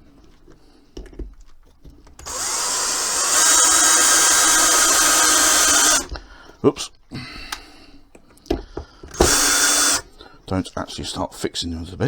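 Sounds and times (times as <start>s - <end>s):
power drill driving screw into wood: 2.2s - 6.1s, 9.1s - 10.0s.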